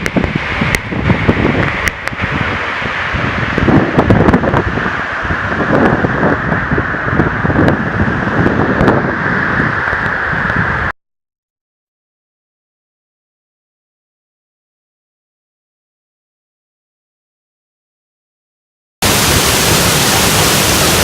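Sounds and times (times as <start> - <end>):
wind buffeting microphone: 0.0 - 10.9.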